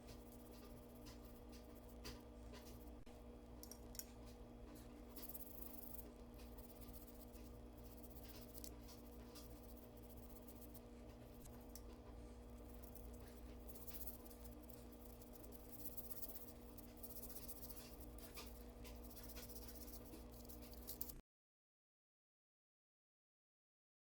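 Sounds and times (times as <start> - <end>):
faint scratching and rubbing: 0.0 - 3.1, 4.1 - 21.2
low electrical hum: 0.0 - 21.2
small clicks: 3.6 - 4.4.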